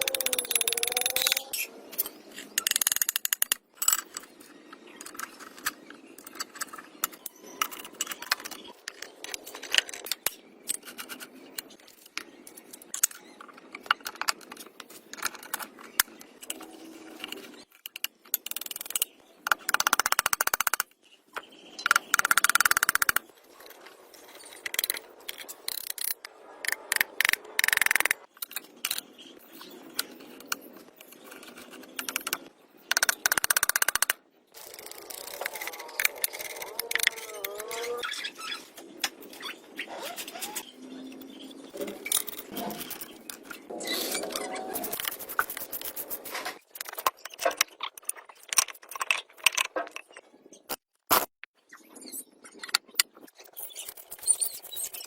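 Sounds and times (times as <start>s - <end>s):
rasping scraping noise: 41.8s - 47.0s.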